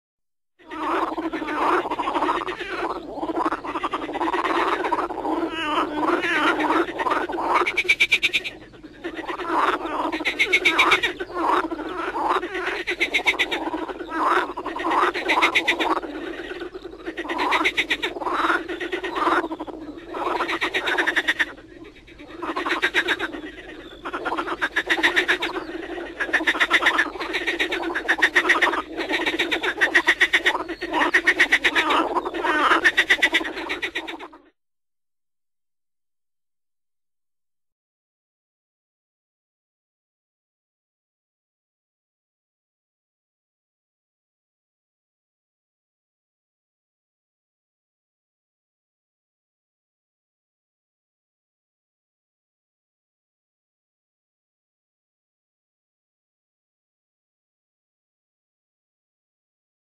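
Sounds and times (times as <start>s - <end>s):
frogs croaking and trilling: 0.6s - 34.5s.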